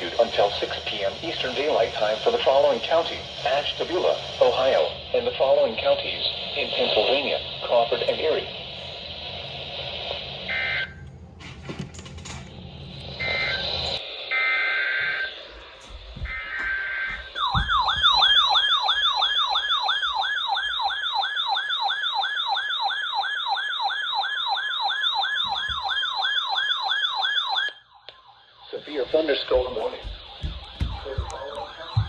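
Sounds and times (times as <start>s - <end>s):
siren-like attention tone: 6.2s - 11.0s, 12.9s - 32.0s.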